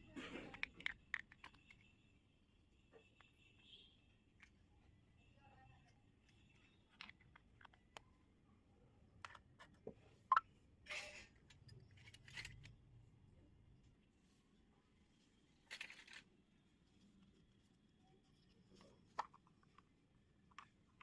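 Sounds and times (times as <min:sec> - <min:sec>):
toy kitchen pieces clicking: 0:00.3 - 0:02.0, 0:06.4 - 0:08.0, 0:10.9 - 0:12.8, 0:15.6 - 0:16.4.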